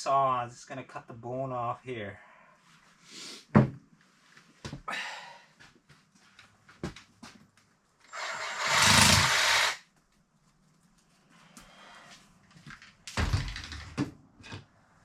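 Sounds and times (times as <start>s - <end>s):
power saw cutting bone: 8.1s - 9.8s.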